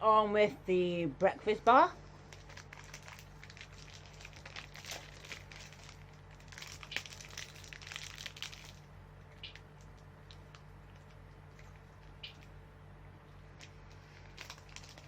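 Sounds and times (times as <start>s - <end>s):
plastic wrapper crinkling: 2.1s - 12.5s, 13.4s - 15.0s.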